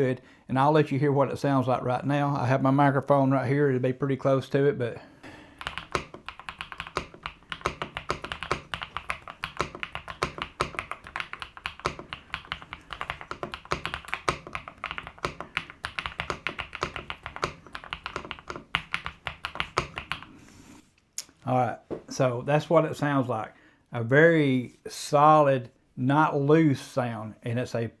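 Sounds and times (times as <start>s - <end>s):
fast typing on mechanical keyboard: 5.5s - 20.3s.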